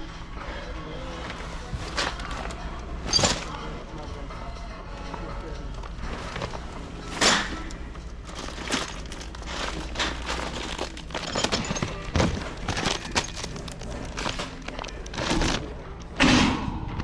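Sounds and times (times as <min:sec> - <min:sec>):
store background hum: 0:00.0 - 0:17.0
packaging rustling and knocking: 0:08.1 - 0:16.2.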